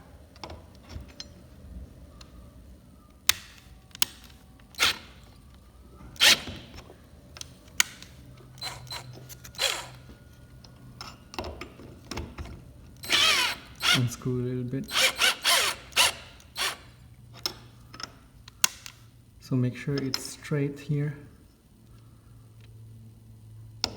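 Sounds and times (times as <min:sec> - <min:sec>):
hand tools and metal hardware clicking: 0:07.4 - 0:10.0.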